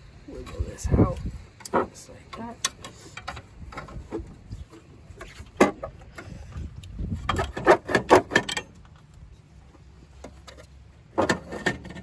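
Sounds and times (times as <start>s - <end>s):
metal knocking and scraping: 2.6s - 6.6s, 7.2s - 9.5s, 10.1s - 12.0s.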